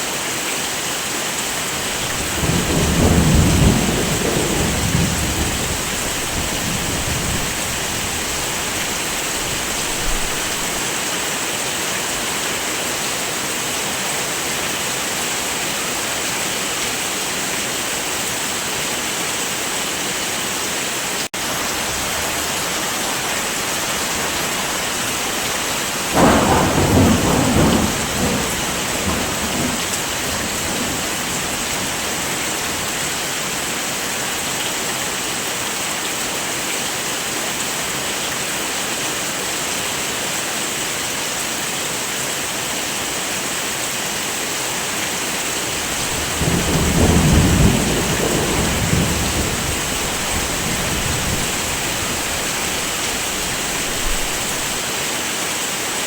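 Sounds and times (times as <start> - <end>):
heavy rain: 0.0 - 56.0
thunder clap rumbling: 1.8 - 10.8, 24.0 - 33.0, 45.7 - 54.8.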